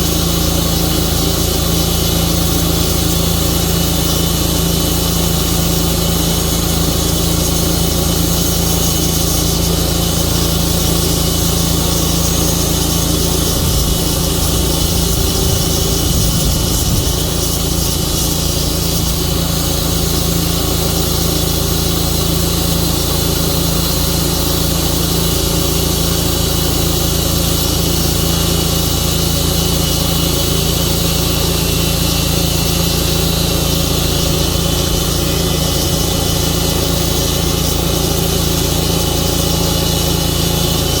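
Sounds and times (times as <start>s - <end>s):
sawmill engine running: 0.0s - 41.0s.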